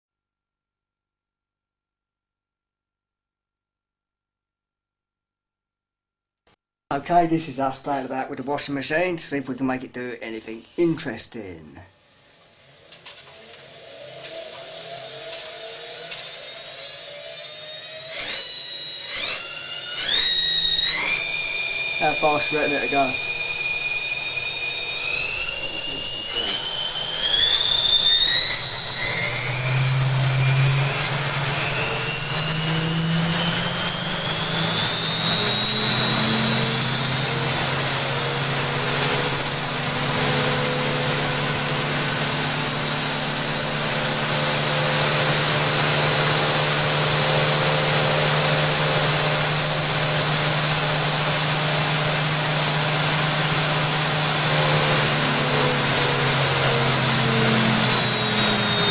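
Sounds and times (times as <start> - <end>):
washing machine motor whine: 10.1 - 58.9.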